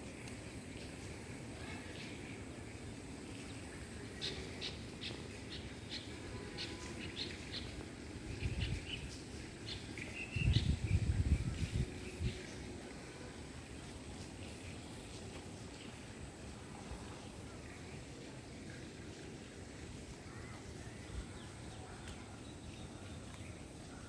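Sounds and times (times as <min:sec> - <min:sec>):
faint steady hiss: 0:00.0 - 0:24.0.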